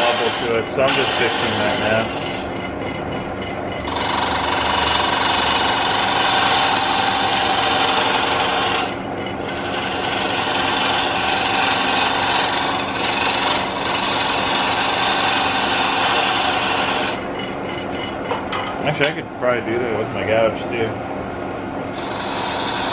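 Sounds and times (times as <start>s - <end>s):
lathe tool scraping wood: 0.0s - 2.6s, 3.9s - 17.3s, 21.9s - 22.9s
lathe motor hum: 0.0s - 3.0s, 3.8s - 17.4s, 21.9s - 22.9s.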